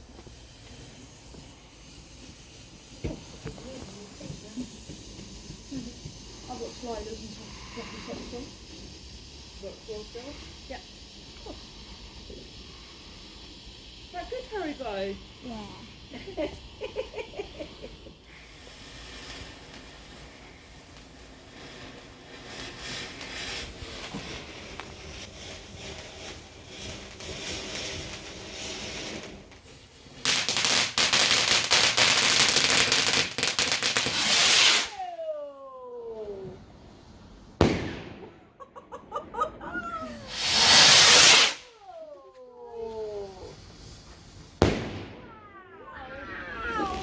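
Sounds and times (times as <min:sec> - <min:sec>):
fireworks sharp cracks: 0:00.0 - 0:35.3, 0:36.5 - 0:42.0, 0:42.8 - 0:47.0
fireworks hissing spray: 0:00.0 - 0:47.0
falling whistling tones: 0:34.0 - 0:35.7.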